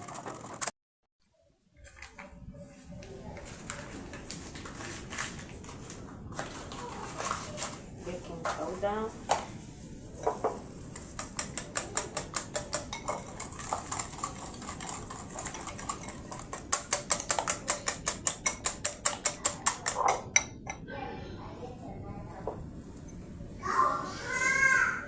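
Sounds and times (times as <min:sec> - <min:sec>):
utensil beating batter in bowl: 0:02.1 - 0:20.8.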